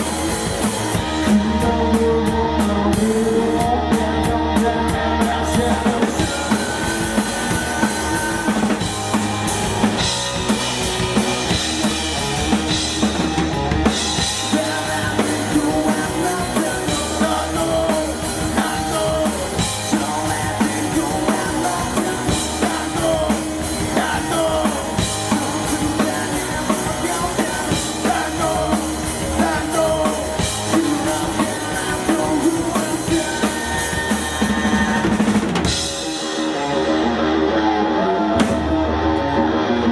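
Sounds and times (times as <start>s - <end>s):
rock band playing live: 0.0s - 39.9s
bass drum and snare hits: 38.4s - 38.9s.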